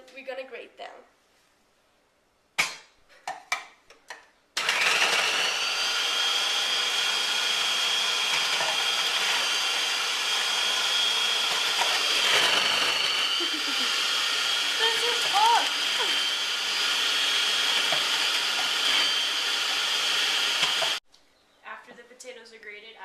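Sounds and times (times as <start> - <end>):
food processor motor whining: 4.6 - 21.0.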